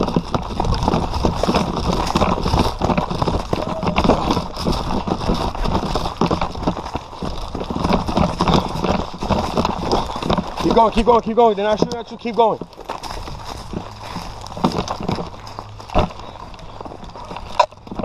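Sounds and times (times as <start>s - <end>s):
wind noise on microphone: 0.0s - 11.3s, 12.7s - 18.0s
footsteps running: 0.0s - 18.0s
gear rattling: 0.0s - 18.0s
camera handling rumble: 11.6s - 18.0s.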